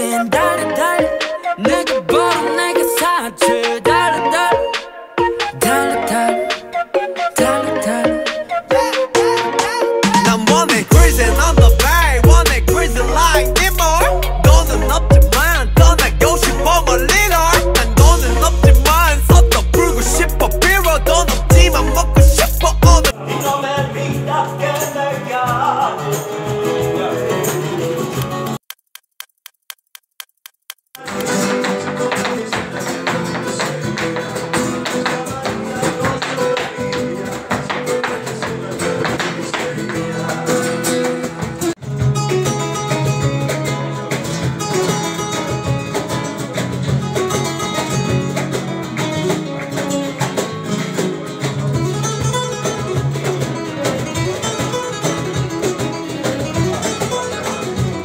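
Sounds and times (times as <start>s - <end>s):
plucked guitar music: 9.2s - 23.1s, 31.0s - 58.0s.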